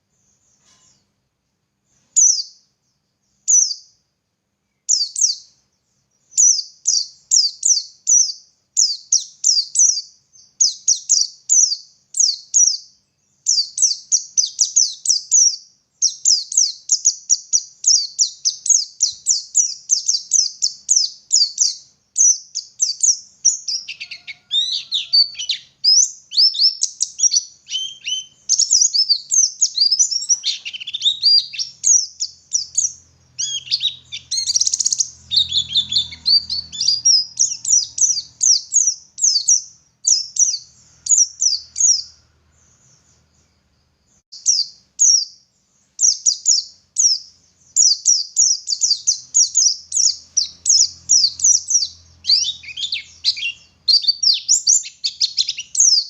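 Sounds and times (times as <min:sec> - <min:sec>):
bird singing high thin notes: 0:16.0 - 0:42.2.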